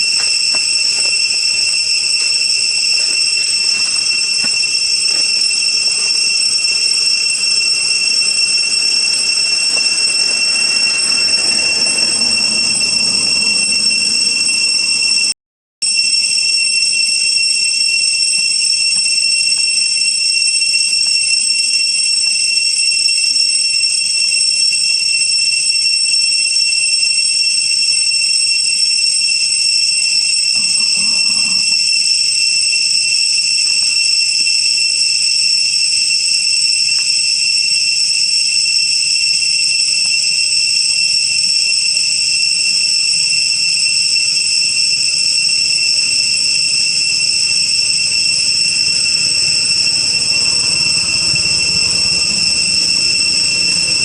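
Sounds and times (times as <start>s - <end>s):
high-pitched whine: 0.0s - 15.3s, 30.0s - 32.6s, 41.3s - 54.0s.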